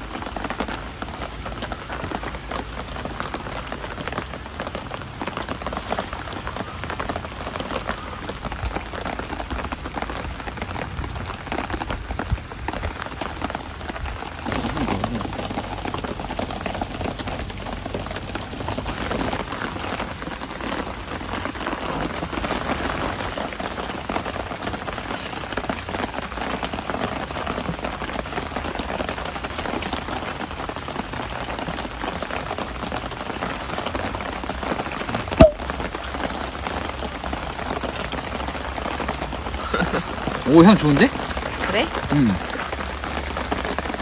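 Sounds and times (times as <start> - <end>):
pouring rain: 0.0 - 44.0
sharp click: 35.4 - 35.6.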